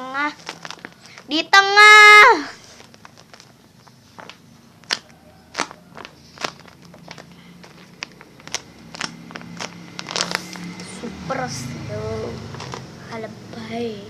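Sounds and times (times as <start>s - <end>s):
faint low hum: 0.0s - 14.0s
foam toy clicks and crackles: 0.3s - 1.4s, 2.8s - 10.9s, 12.6s - 12.8s.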